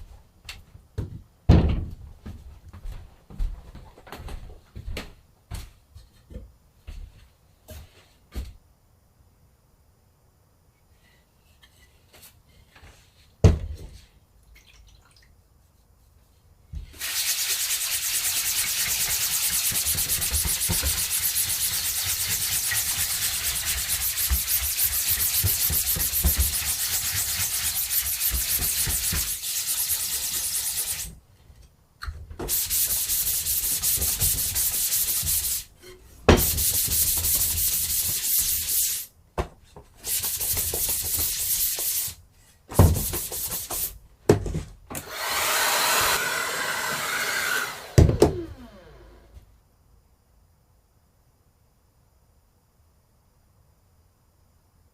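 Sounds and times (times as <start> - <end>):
spray gun hissing: 17.0 - 31.1.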